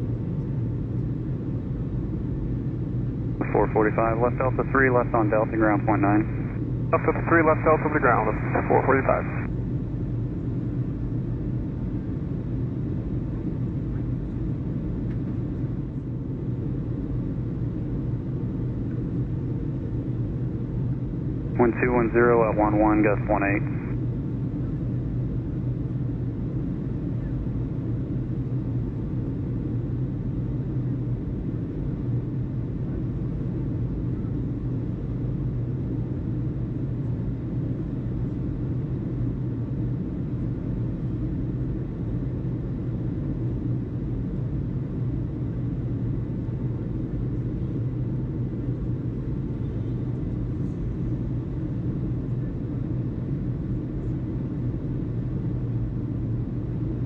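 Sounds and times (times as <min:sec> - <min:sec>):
low hum: 0:02.8 - 0:10.4, 0:21.2 - 0:24.0
low rumble: 0:03.4 - 0:09.5.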